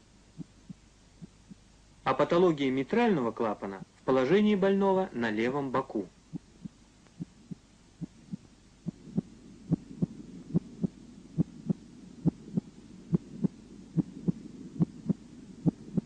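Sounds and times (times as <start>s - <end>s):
steady low hiss: 0.0s - 16.0s
heartbeat through stethoscope: 0.4s - 1.7s, 6.3s - 16.0s.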